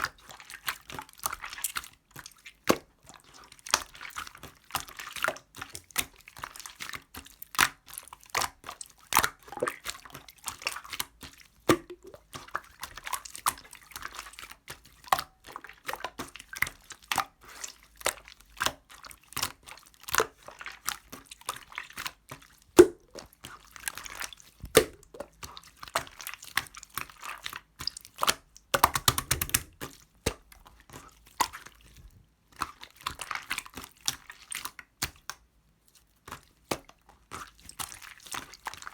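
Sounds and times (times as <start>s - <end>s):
slime squishing and popping: 11.7s - 12.3s, 24.6s - 25.4s, 28.2s - 29.8s.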